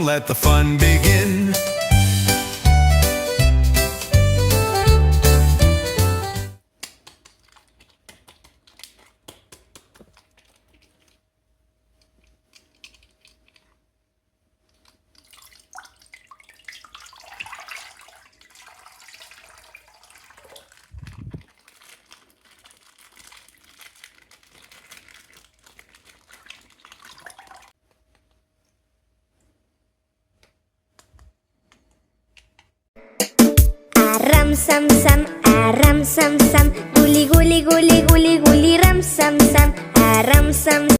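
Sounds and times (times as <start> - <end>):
plastic crinkling: 6.7 - 13.8, 20.4 - 28.8
water handling sounds: 14.7 - 27.7.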